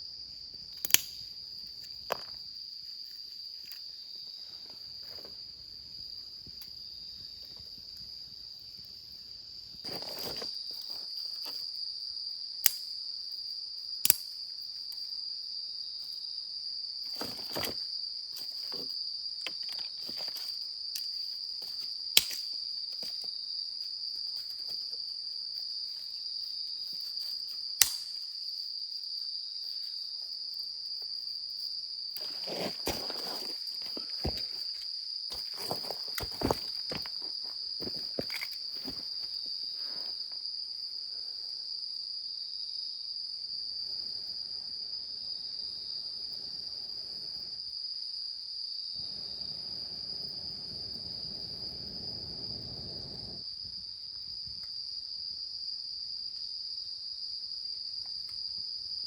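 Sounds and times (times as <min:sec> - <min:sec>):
crickets chirring: 0:00.0 - 0:59.0
soft rustling: 0:32.2 - 0:40.2.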